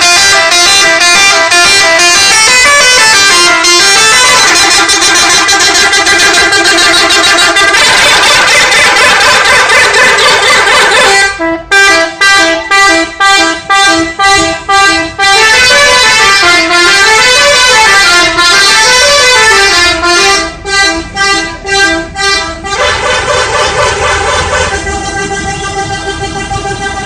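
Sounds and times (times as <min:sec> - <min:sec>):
musical bus horn tune: 0:00.0 - 0:27.0.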